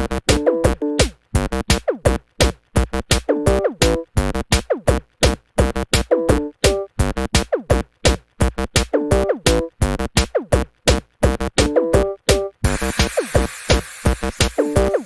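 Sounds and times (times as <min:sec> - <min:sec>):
drum machine loop: 0:06.7 - 0:15.0.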